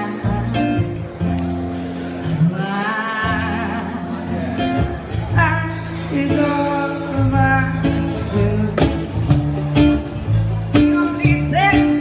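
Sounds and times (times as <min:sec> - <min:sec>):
acoustic guitar: 0:00.0 - 0:12.0
steady low bass notes: 0:00.0 - 0:12.0
person singing: 0:10.8 - 0:12.0.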